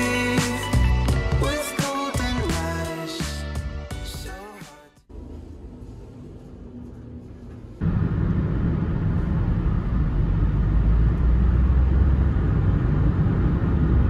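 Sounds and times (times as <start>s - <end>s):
vehicle rumble: 6.4s - 14.0s.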